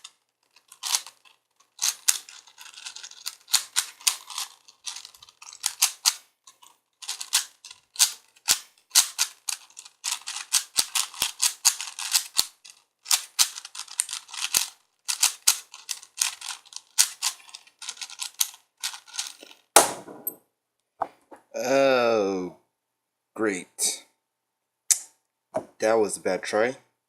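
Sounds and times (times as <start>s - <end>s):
plastic puzzle cube clicking: 0.0s - 19.6s.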